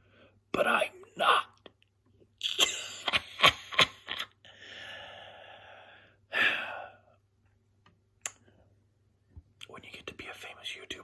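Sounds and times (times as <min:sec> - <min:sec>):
person gasping and sighing: 0:04.4 - 0:07.1.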